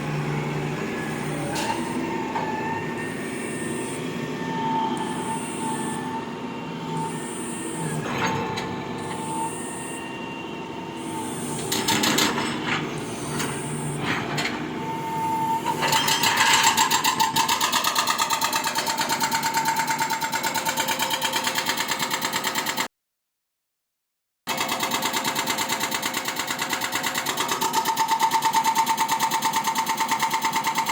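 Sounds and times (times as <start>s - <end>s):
motor running with high whine: 0.0s - 16.0s.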